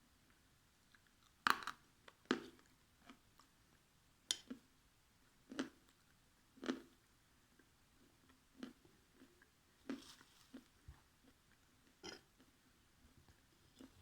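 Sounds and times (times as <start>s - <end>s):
chewing: 8.3s - 12.5s, 13.6s - 14.0s.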